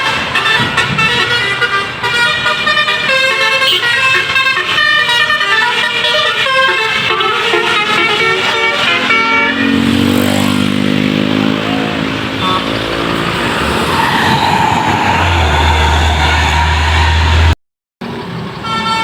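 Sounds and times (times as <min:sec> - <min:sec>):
musical bus horn melody: 0:00.0 - 0:10.2, 0:16.1 - 0:17.6, 0:18.6 - 0:19.0
bus engine drone: 0:00.0 - 0:19.0
road noise: 0:00.0 - 0:19.0.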